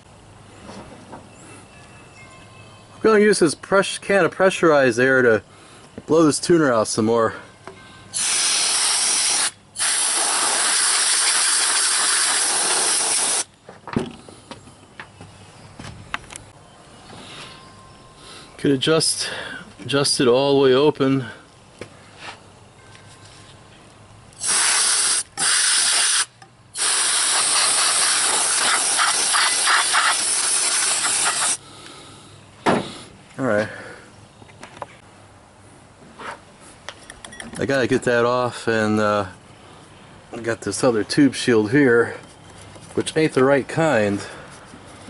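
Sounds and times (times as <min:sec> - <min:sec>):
compressed air spraying: 0:08.2 - 0:13.5, 0:24.4 - 0:31.6.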